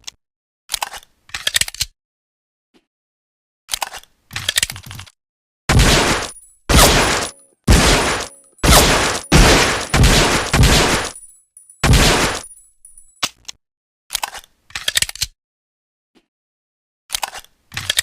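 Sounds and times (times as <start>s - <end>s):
loud pistol shots: 5.7s - 12.5s.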